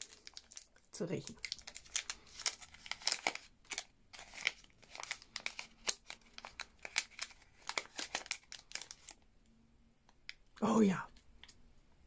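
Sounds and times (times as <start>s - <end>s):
packaging bag crinkling: 0.0s - 9.2s.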